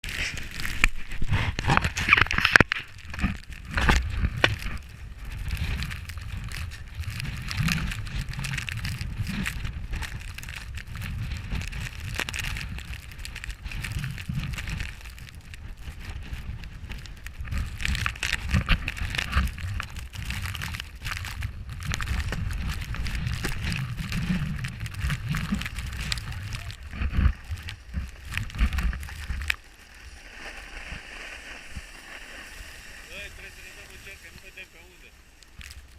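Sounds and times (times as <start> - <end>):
snowboard scraping over snow: 0.0 - 35.9
wind rumbling on microphone: 0.0 - 35.9.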